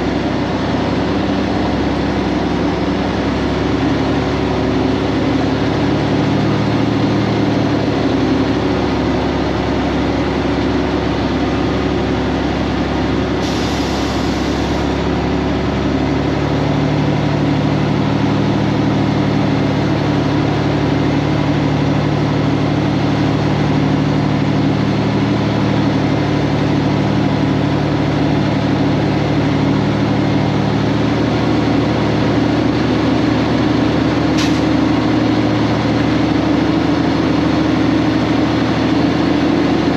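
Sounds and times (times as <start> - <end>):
diesel truck engine running: 0.0 - 39.9
short air hiss: 13.4 - 14.9, 34.4 - 34.6.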